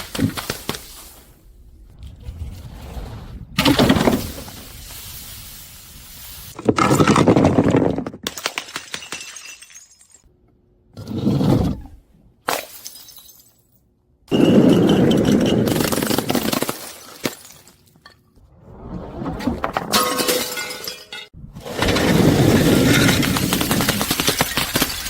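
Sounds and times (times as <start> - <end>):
glass bottles shattering and crunching: 6.6 - 10.3, 12.5 - 13.7, 14.3 - 18.2, 19.9 - 25.0
broken glass crackling: 22.0 - 25.0.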